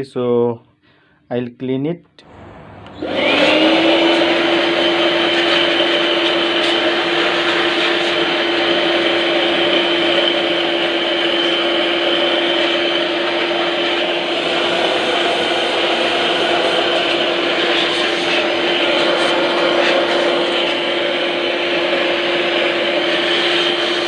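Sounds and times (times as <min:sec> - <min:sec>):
rushing air: 0:02.2 - 0:05.3
electric cleaning tool motor whirring: 0:02.2 - 0:24.0.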